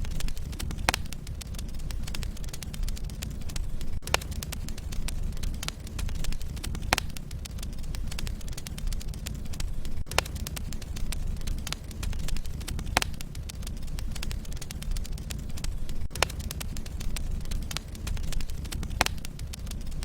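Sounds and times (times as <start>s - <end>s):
logs crackling: 0.0s - 20.0s
low rumble of flame: 0.0s - 20.0s
sharp pops from fire: 0.0s - 20.0s.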